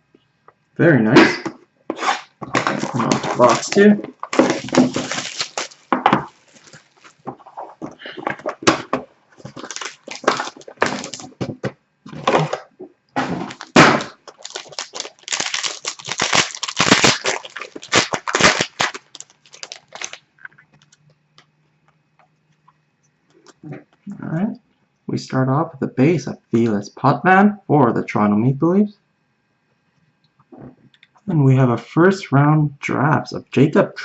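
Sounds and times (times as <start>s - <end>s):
packaging thunks: 1.9s - 20.2s
plastic wrap crinkling and tearing: 2.0s - 12.7s, 13.4s - 21.0s.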